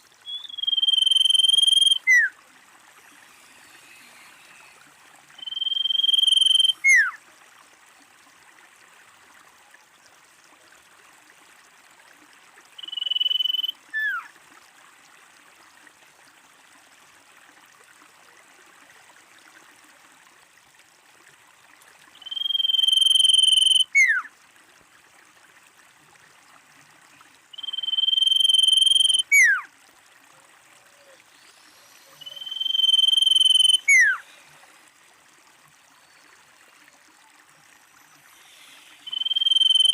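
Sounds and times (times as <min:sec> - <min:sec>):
faint steady hiss: 0:00.0 - 0:39.9
bird whistling call: 0:00.2 - 0:02.3, 0:05.3 - 0:07.2, 0:12.8 - 0:14.3, 0:22.2 - 0:24.3, 0:27.6 - 0:29.6, 0:31.4 - 0:34.2, 0:38.4 - 0:39.9.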